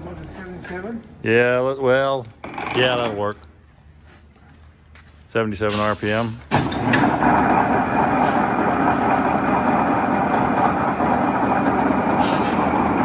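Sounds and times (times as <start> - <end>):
lathe running: 6.7 - 13.0.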